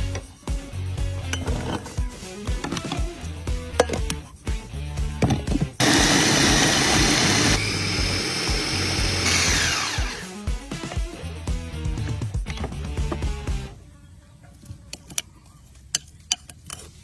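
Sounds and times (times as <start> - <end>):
kitchen appliance motor running: 5.8 - 10.4.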